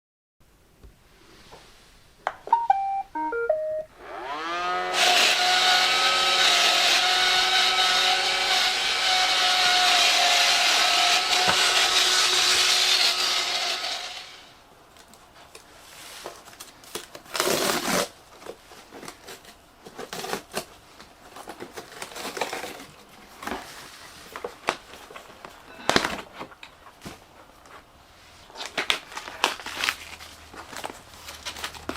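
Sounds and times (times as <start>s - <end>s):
robot vacuum start-up beeps: 2.5s - 3.9s
vacuum motors whining: 4.0s - 14.5s.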